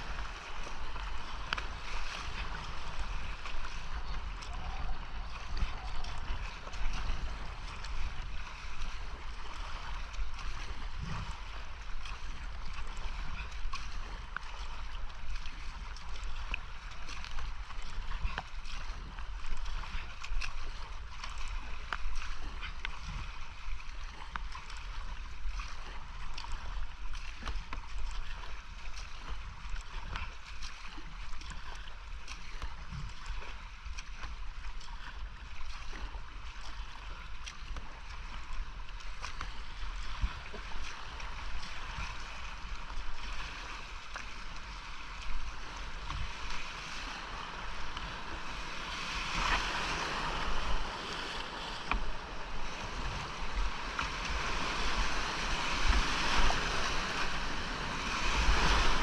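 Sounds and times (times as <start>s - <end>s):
paddle splashes: 0.0s - 59.0s
whitewater rapids rushing: 46.5s - 59.0s.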